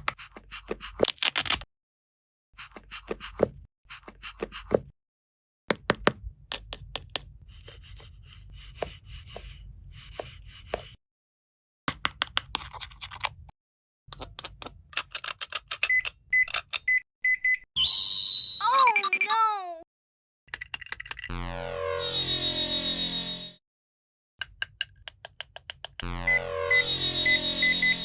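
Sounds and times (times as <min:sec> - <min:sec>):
plastic toys clicking and scraping: 0:00.0 - 0:01.7, 0:12.2 - 0:13.4, 0:14.1 - 0:16.8, 0:20.5 - 0:21.3
toy beeping: 0:26.1 - 0:28.0.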